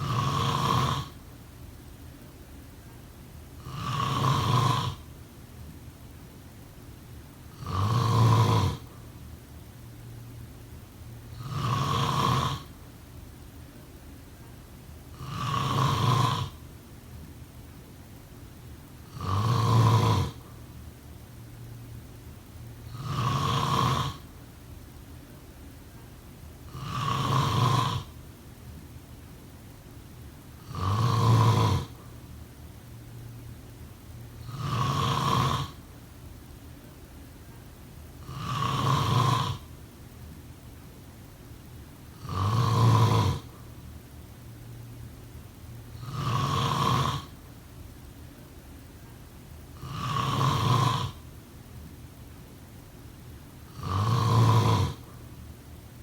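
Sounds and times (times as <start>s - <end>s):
person snoring loudly: 0.0s - 1.2s, 3.6s - 5.1s, 7.5s - 8.9s, 11.3s - 12.8s, 15.1s - 16.6s, 19.0s - 20.5s, 22.9s - 24.3s, 26.7s - 28.2s, 30.6s - 32.0s, 34.4s - 35.8s, 38.2s - 39.7s, 42.2s - 43.6s, 46.0s - 47.4s, 49.8s - 51.2s, 53.7s - 55.2s
faint low hum: 0.0s - 56.0s.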